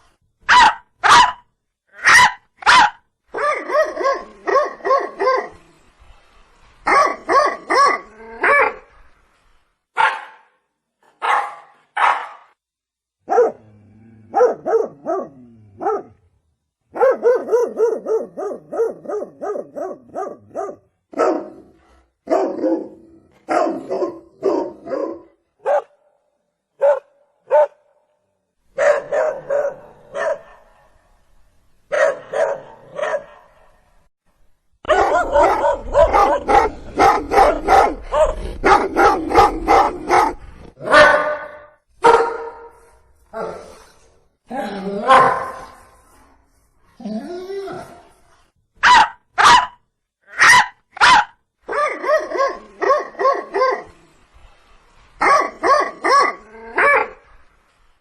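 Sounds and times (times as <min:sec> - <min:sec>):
dog barking: 0:00.5 - 0:05.6, 0:06.8 - 0:08.8, 0:10.0 - 0:10.6, 0:11.2 - 0:12.6, 0:13.2 - 0:13.6, 0:14.3 - 0:16.2, 0:16.9 - 0:26.0, 0:26.8 - 0:27.9, 0:28.8 - 0:31.0, 0:31.9 - 0:33.8, 0:34.8 - 0:42.8, 0:45.1 - 0:45.8, 0:48.8 - 0:53.9, 0:55.2 - 0:57.2.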